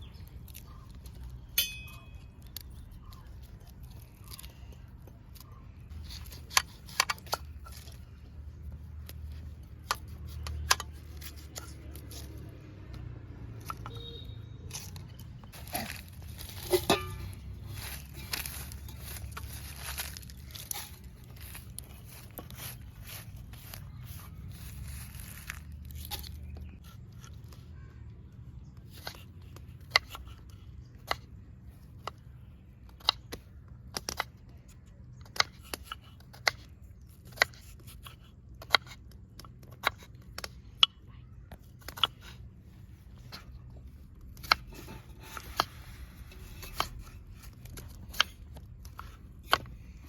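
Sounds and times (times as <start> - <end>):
rustling and tearing: 14.7 - 27.6.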